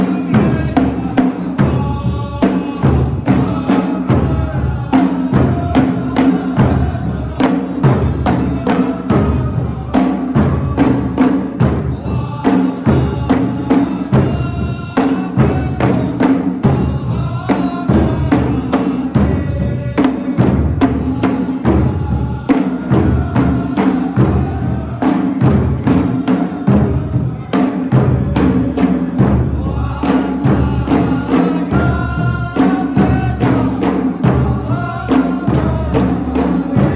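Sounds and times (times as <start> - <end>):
group singing in chorus: 0.0 - 36.9
hand drums beating: 0.0 - 36.9.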